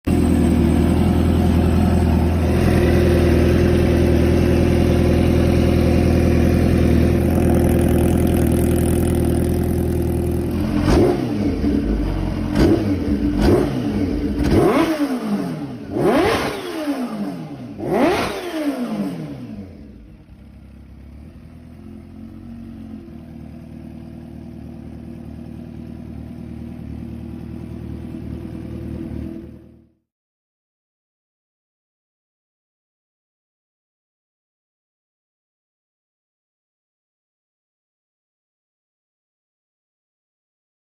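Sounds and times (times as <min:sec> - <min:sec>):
motorcycle engine revving: 0:00.1 - 0:29.9.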